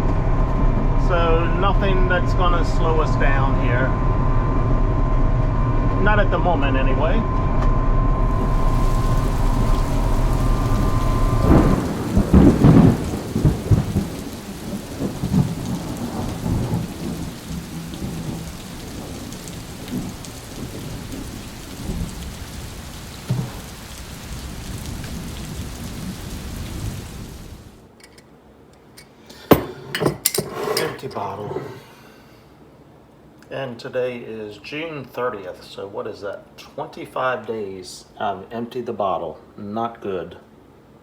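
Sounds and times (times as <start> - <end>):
thunder rumbling: 0.0 - 27.8
steady rain: 8.2 - 28.2.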